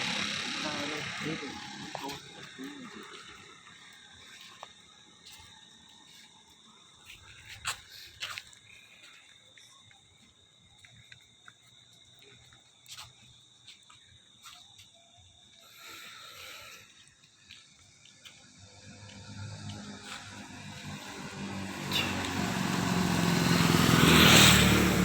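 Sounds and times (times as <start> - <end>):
high-pitched whine: 0.0 - 4.8, 18.4 - 25.0.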